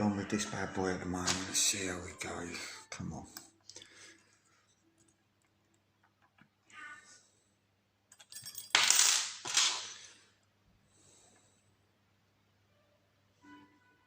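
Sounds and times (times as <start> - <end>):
metal tools clinking and rattling: 8.1 - 10.0.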